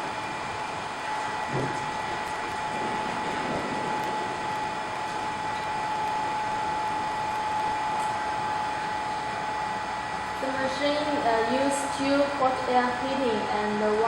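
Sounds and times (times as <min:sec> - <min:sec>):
hot-air blower rushing with whine: 0:00.0 - 0:13.4.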